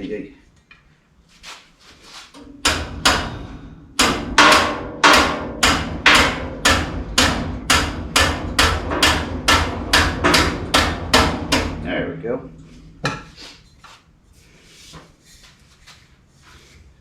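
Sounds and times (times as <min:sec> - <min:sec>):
hammer striking metal: 0:02.4 - 0:13.4.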